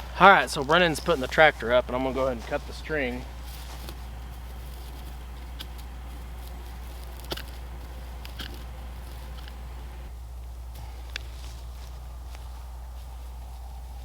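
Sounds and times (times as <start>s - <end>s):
tractor engine running: 0.0s - 14.0s
twine being cut clicks and rustles: 0.3s - 10.1s.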